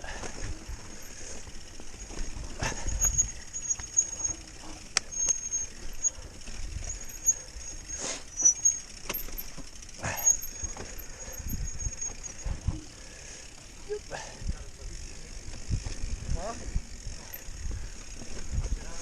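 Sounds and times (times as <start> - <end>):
bike rattling over rough ground: 0.0 - 19.0.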